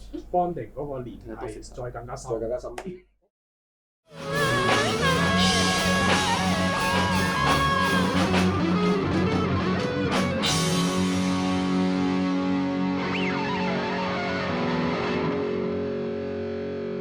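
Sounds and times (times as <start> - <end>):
electric guitar lead line: 4.1 - 17.0
bass and drums: 4.2 - 13.0.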